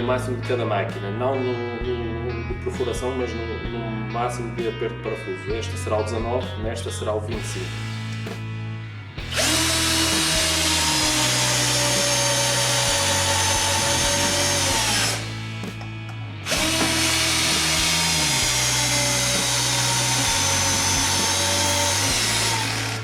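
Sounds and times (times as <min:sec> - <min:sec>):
drill driving screw: 0:09.3 - 0:15.4, 0:16.4 - 0:23.0.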